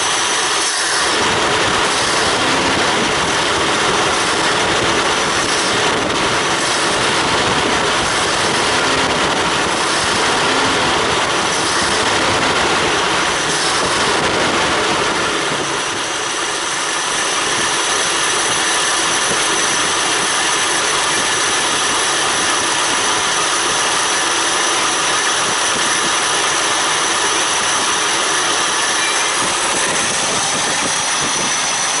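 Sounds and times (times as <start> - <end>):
car engine running: 0.0 - 18.3.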